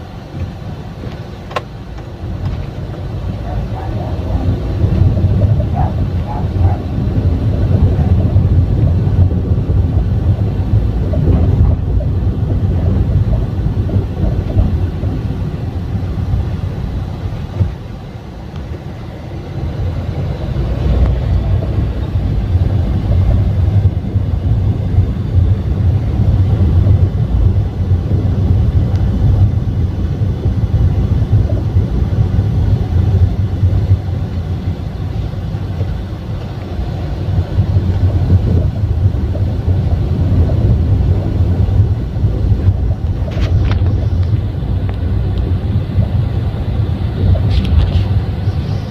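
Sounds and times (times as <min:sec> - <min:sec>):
road noise and tyre rumble: 0:00.0 - 0:48.9.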